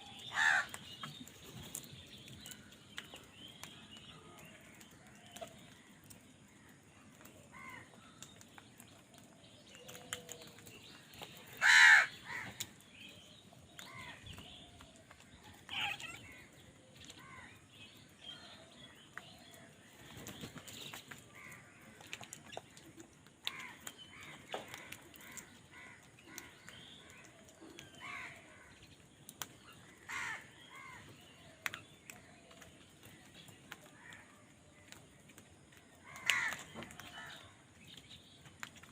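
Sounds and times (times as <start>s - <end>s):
crows cawing: 0.3s - 0.8s, 11.6s - 12.6s, 30.0s - 31.0s, 36.0s - 37.3s
faint crow calls: 0.3s - 0.8s, 7.5s - 8.0s, 11.5s - 12.6s, 23.4s - 28.7s, 29.8s - 31.1s, 36.0s - 37.6s.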